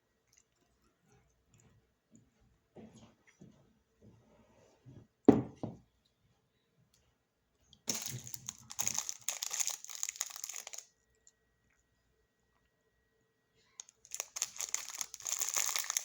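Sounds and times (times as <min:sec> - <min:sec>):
snack wrapper crinkling: 0:07.9 - 0:11.3, 0:13.8 - 0:16.0.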